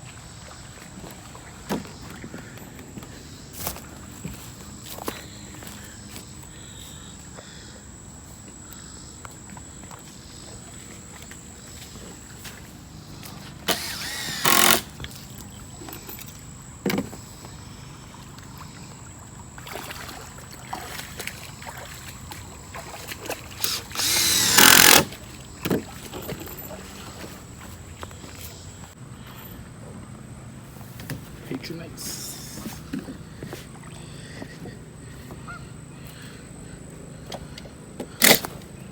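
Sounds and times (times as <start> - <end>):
power drill whirring: 13.6 - 15.1, 23.6 - 25.1
knocks of wood and tools: 16.8 - 17.2.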